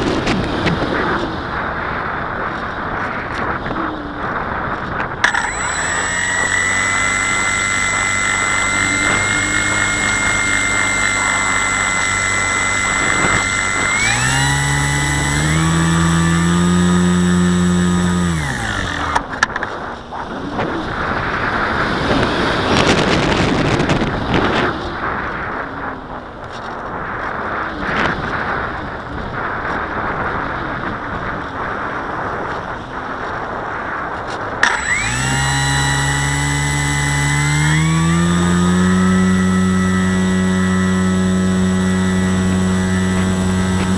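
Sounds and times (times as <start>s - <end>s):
electric motor whine: 5.1s - 19.7s, 34.6s - 43.9s.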